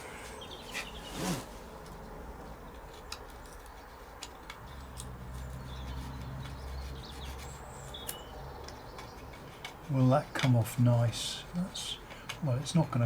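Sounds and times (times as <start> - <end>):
blade scraping wood: 0.6 - 1.8.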